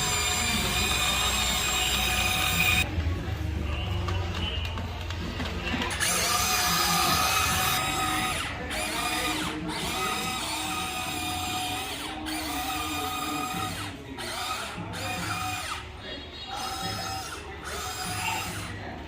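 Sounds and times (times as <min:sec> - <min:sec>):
electric motors whining: 0:00.0 - 0:02.9, 0:05.9 - 0:15.9, 0:16.5 - 0:18.8.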